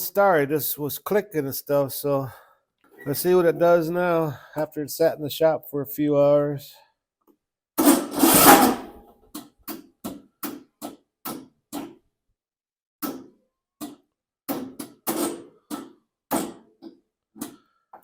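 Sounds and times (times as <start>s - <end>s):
loud scraping noise: 7.8s - 9.0s.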